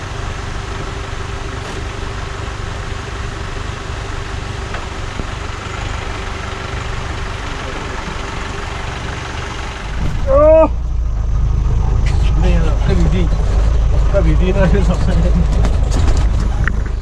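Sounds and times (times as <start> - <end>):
faint constant hum: 0.0 - 2.6, 7.7 - 16.8
vehicle engine rumbling: 0.0 - 17.0.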